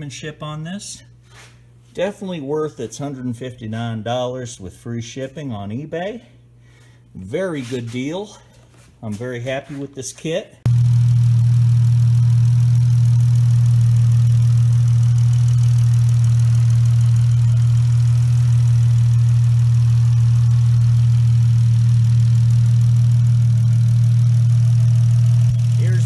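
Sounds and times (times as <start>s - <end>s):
car engine idling: 10.7s - 26.0s.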